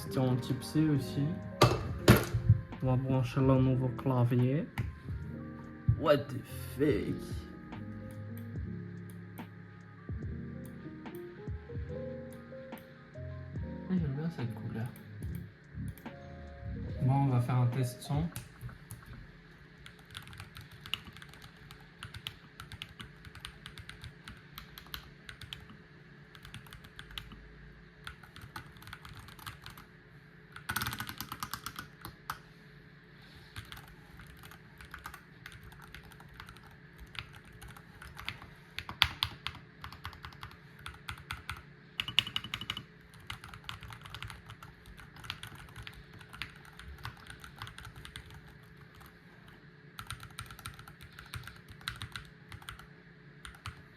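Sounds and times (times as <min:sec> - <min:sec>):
keyboard typing clatter: 0:19.8 - 0:27.4, 0:28.1 - 0:29.9, 0:30.6 - 0:32.4, 0:33.6 - 0:49.2, 0:50.0 - 0:53.8.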